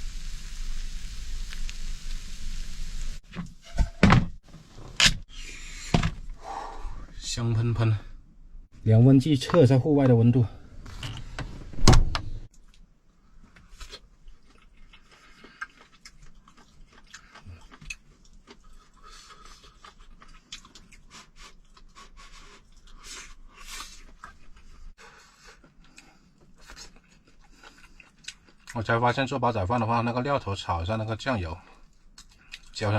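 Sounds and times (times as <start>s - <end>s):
person chewing: 13.7s - 28.8s.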